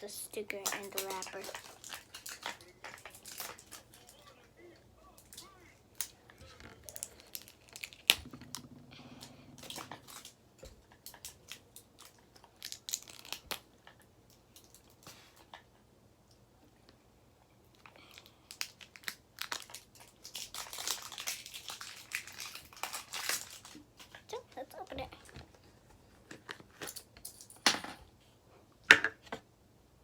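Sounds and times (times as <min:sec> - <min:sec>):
plastic wrapper crinkling: 0:00.4 - 0:04.4, 0:05.1 - 0:08.7, 0:09.6 - 0:15.1, 0:18.0 - 0:24.3.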